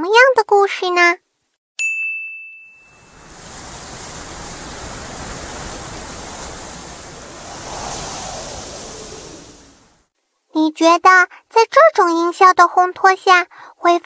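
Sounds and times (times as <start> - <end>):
bright bell-like ding: 1.8 - 3.1
steady rushing noise: 3.0 - 10.1.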